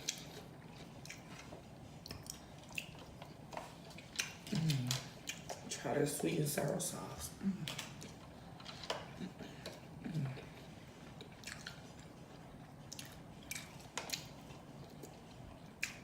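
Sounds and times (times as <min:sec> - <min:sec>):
wet chewing and mouth clicks: 0:00.0 - 0:06.7, 0:07.6 - 0:16.0.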